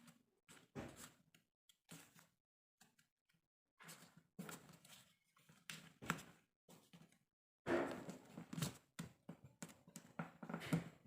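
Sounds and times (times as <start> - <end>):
paper rustling and crinkling: 1.8 - 3.1, 3.8 - 7.2.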